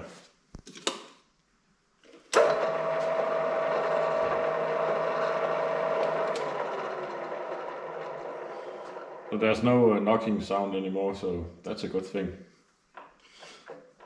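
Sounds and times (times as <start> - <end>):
drill press motor whining: 2.3 - 9.6
clicks: 5.1 - 7.2.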